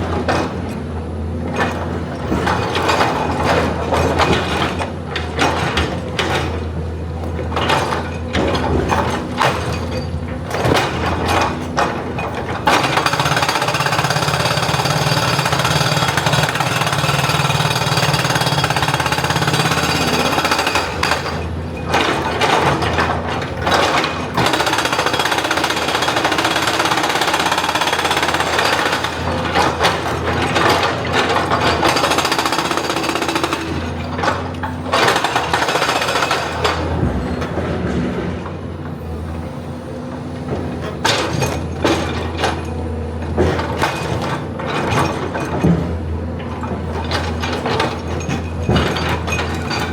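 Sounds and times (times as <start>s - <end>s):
hydraulic breaker hammering rock: 0.0s - 39.3s, 40.2s - 49.9s.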